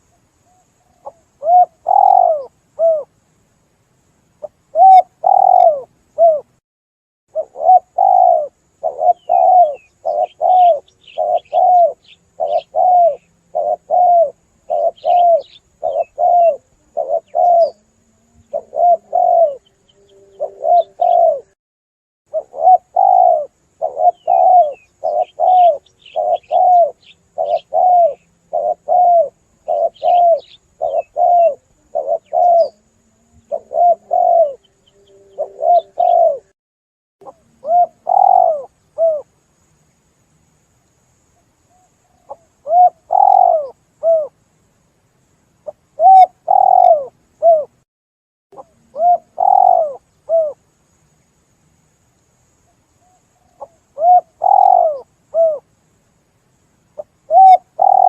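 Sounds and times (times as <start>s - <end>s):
doves cooing: 0.8s - 3.1s, 4.4s - 6.5s, 7.3s - 21.6s, 22.3s - 36.5s, 37.2s - 39.3s, 41.7s - 44.3s, 46.0s - 47.8s, 48.6s - 50.6s, 53.0s - 55.6s, 57.0s - 58.0s
faint high chirps: 7.3s - 21.6s.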